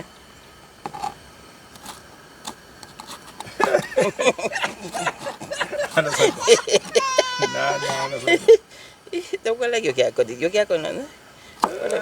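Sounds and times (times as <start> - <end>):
voices: 3.6 - 12.0.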